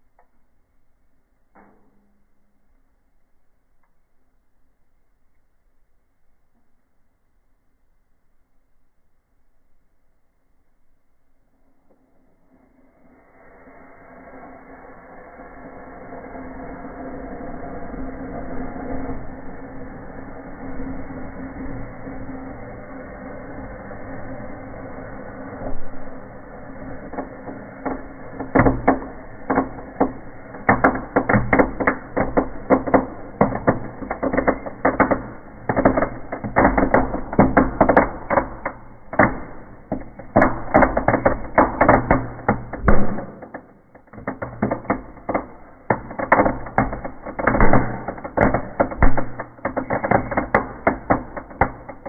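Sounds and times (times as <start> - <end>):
steady low hum: 0.0 - 52.0
reversed firework crackling: 11.6 - 52.0.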